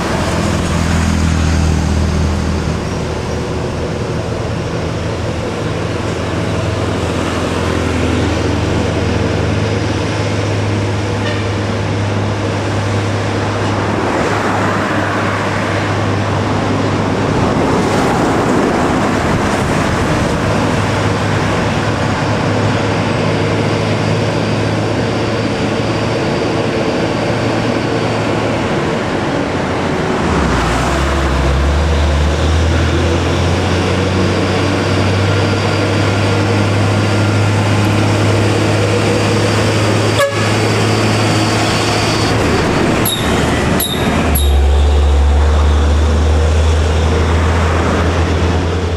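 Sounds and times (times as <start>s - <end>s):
diesel trucks labouring uphill: 0.0s - 48.9s
deeper engine note: 20.2s - 48.9s
vehicle horn toot: 40.2s - 40.7s, 43.0s - 45.1s.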